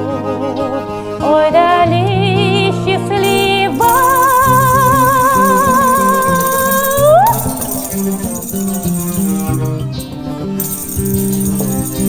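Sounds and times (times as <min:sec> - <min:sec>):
plucked bouzouki and guitar: 0:00.0 - 0:04.4
woman singing with vibrato: 0:01.2 - 0:08.2
light rattling percussion: 0:03.2 - 0:12.0.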